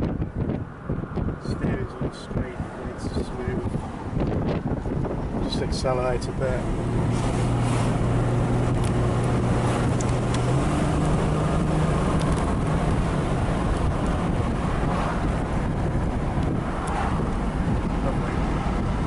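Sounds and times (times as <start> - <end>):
wind and road noise: 0.0 - 19.0
car engine accelerating: 1.1 - 19.0.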